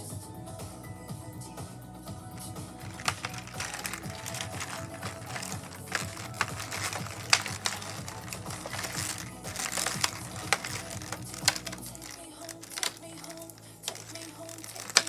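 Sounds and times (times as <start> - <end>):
faint music: 1.4 - 15.0
clicks of small hard pieces: 2.4 - 15.0.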